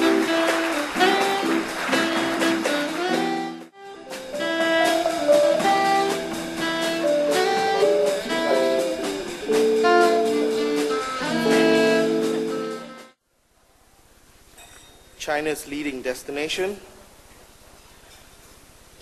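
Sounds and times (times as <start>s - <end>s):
instrumental background music: 0.0s - 13.2s.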